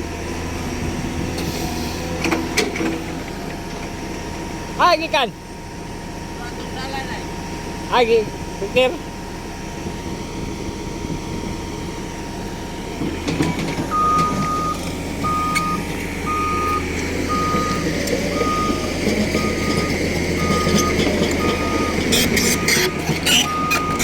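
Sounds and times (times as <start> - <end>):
heavy engine rumble: 0.0 - 24.0
reversing alarm beeping: 13.9 - 24.0.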